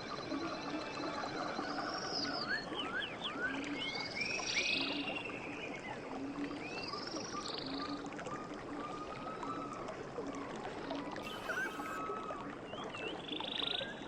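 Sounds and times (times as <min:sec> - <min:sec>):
river water running: 0:00.2 - 0:14.0
bird short chirps: 0:11.2 - 0:12.0
bird buzzy call: 0:11.2 - 0:12.1.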